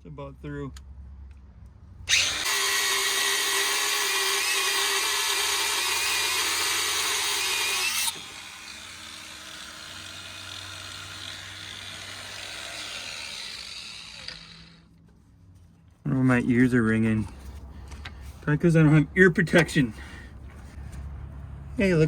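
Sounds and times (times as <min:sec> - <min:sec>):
angle grinder cutting steel: 0:02.1 - 0:14.9.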